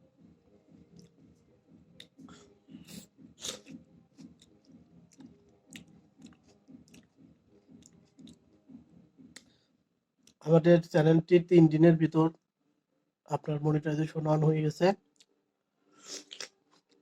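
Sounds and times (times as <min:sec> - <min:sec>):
mouth smacking clicks: 0:03.4 - 0:04.5
wet chewing: 0:03.4 - 0:08.4, 0:16.0 - 0:17.0.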